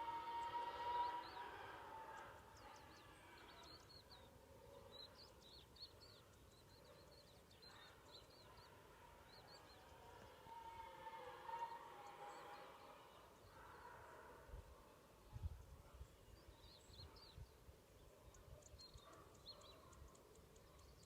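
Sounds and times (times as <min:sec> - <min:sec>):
small birds chirping: 0:02.0 - 0:10.4, 0:15.3 - 0:21.0.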